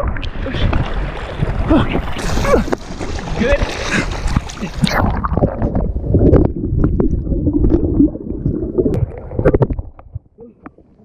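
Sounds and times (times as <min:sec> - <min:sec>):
muffled water sloshing and gurgling: 0:00.0 - 0:11.0.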